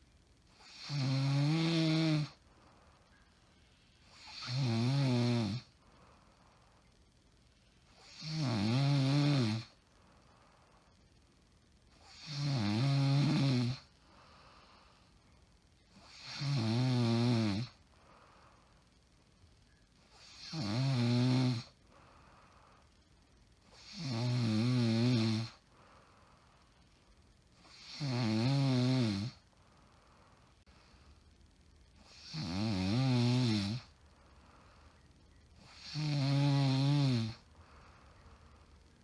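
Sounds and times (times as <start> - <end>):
woman snoring: 0.6 - 2.4, 4.0 - 5.8, 7.9 - 9.8, 12.0 - 14.9, 16.0 - 17.8, 20.1 - 21.8, 23.8 - 25.6, 27.6 - 29.5, 32.0 - 34.0, 35.6 - 37.8.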